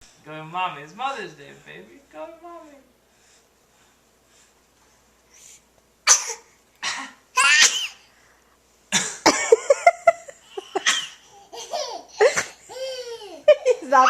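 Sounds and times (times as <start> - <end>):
baby sneezing: 6.0 - 8.1, 10.8 - 12.6
baby high-pitched vocal sound: 7.4 - 8.0
baby laughing: 9.3 - 14.0.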